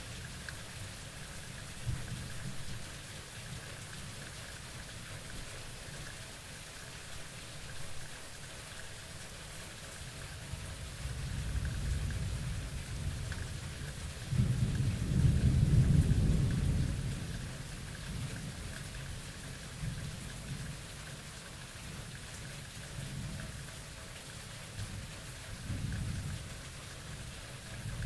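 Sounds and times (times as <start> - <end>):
rain hissing: 0.0 - 28.0
thunder rumbling: 10.8 - 18.3.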